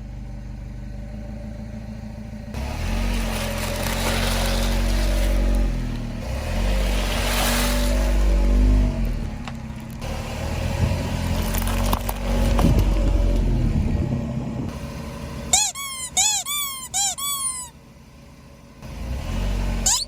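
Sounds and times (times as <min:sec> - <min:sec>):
car engine running low: 0:00.0 - 0:20.0
sharp cracks of crushed objects: 0:11.3 - 0:12.9
short high squeaks: 0:15.5 - 0:17.8.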